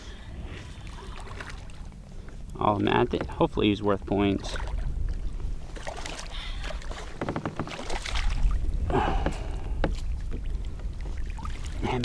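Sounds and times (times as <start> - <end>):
low wind rumble: 0.0 - 12.0
water splashes: 0.0 - 12.0
clicks and knocks on kayak: 3.0 - 3.4, 7.0 - 8.1, 8.8 - 10.5.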